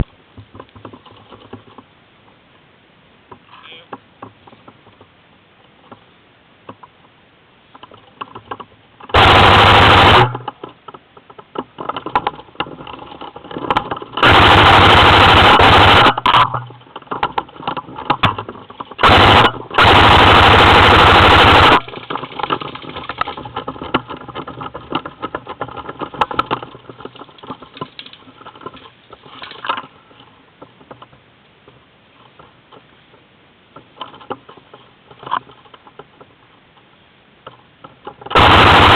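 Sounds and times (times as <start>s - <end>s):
rustling: 0.0s - 38.9s
airsoft gun full-auto bursts: 9.1s - 10.5s, 14.2s - 16.3s, 19.0s - 22.0s, 38.3s - 38.9s.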